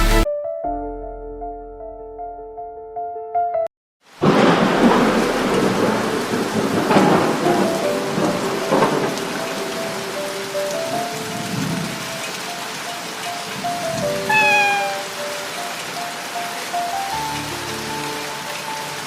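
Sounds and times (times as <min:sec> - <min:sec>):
heavy rain: 0:04.0 - 0:19.0
thunder: 0:04.2 - 0:09.8, 0:11.2 - 0:12.1
soft piano notes: 0:08.3 - 0:19.0.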